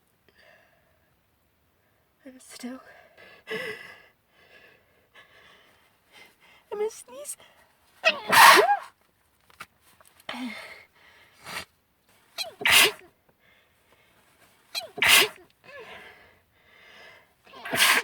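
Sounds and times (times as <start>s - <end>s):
quiet breaths: 0.0s - 8.0s, 9.8s - 18.0s
woman sneezing: 8.0s - 8.9s, 12.4s - 13.0s, 14.8s - 15.4s, 17.6s - 18.0s.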